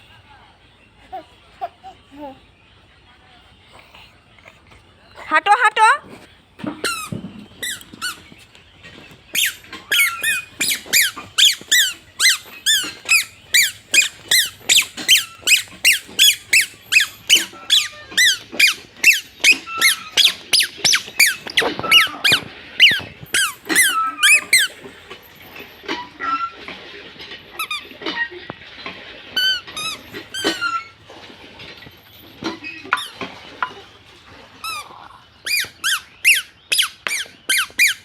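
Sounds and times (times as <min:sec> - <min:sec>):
short high squeaks: 0:06.8 - 0:08.3, 0:09.3 - 0:24.8, 0:34.6 - 0:38.0.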